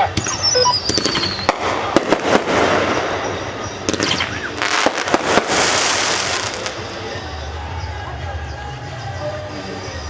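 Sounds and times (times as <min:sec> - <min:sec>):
firework whistle: 0:00.0 - 0:07.3
firework bangs: 0:00.0 - 0:07.4
firework crackling: 0:00.0 - 0:10.0.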